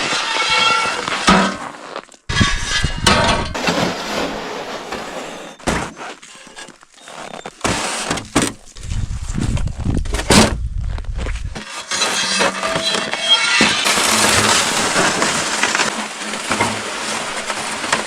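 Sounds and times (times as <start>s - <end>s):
scrap steel clanking and scraping: 0.0s - 8.6s, 11.6s - 18.0s.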